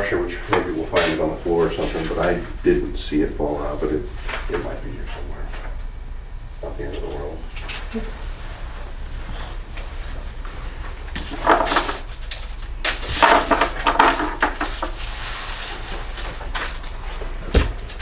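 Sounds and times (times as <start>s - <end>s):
steady low hum: 0.0s - 18.0s
parts thumping down: 11.2s - 15.2s, 15.9s - 18.0s
metal parts clattering: 11.3s - 14.9s.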